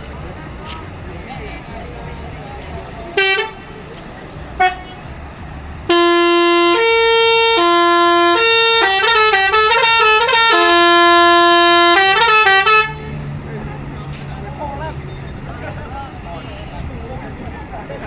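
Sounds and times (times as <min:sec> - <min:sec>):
musical bus horn playing a tune: 0:03.1 - 0:13.4.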